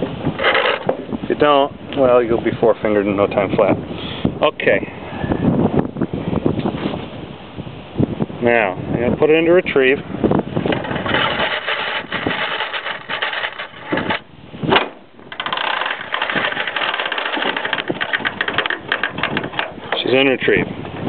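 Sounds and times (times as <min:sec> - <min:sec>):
metallic clicking and rattling: 0:00.4 - 0:00.9, 0:10.7 - 0:14.3, 0:15.2 - 0:20.2.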